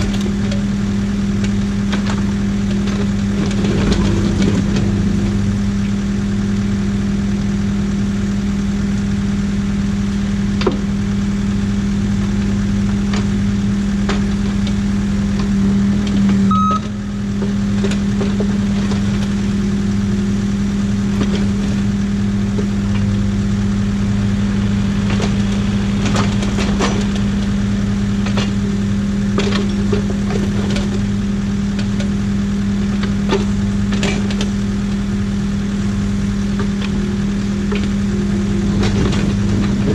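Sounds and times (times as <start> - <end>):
excavator diesel engine running: 0.0 - 39.9
machine knocks and clatter: 1.8 - 6.3
short high tone: 16.5 - 16.9.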